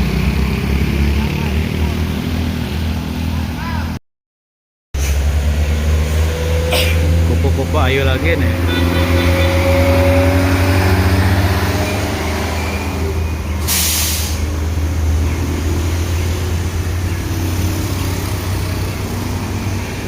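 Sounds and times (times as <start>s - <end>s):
diesel bus engine droning: 5.0s - 20.0s
air brake hiss: 13.6s - 14.5s.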